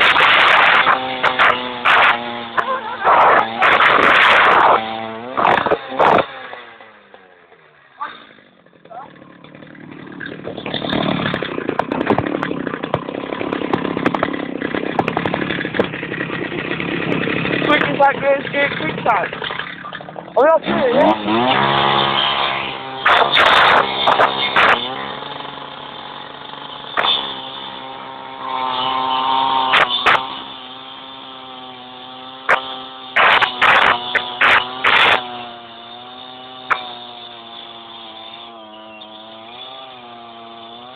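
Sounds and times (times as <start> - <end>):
sharp cracks: 0.0 - 7.3, 8.0 - 30.5, 32.4 - 37.9
vehicle engine running: 0.0 - 39.8
power saw cutting metal: 0.0 - 40.9.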